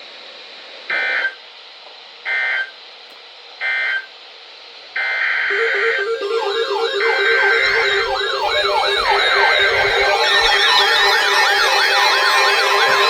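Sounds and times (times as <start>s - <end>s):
low alternating two-note beeping: 5.5s - 13.0s
shrill warbling data tones: 5.5s - 13.0s.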